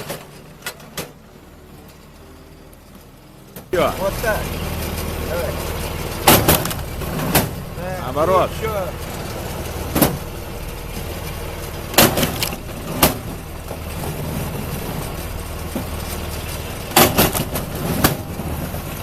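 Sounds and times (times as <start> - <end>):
machine engine running: 0.0 - 19.0
sharp knocks: 5.8 - 19.0.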